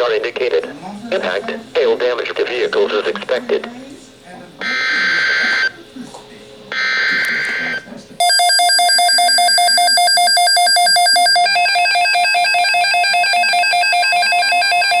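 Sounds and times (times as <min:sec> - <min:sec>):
rapidly pulsing alert beep: 0:06.8 - 0:15.0.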